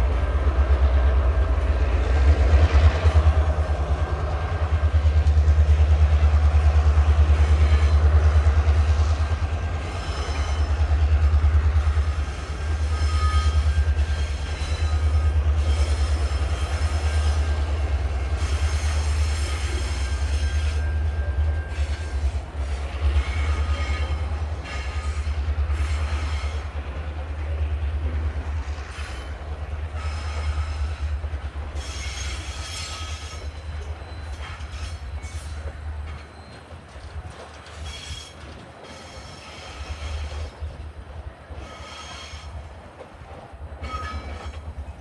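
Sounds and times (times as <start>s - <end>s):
train rumbling past: 0.0s - 45.0s
high-pitched wheel squeal: 12.8s - 16.9s, 41.6s - 42.5s.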